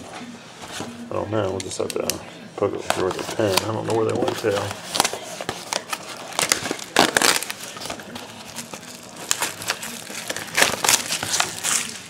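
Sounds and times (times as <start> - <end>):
plastic shrink wrap crinkling: 2.8 - 12.0.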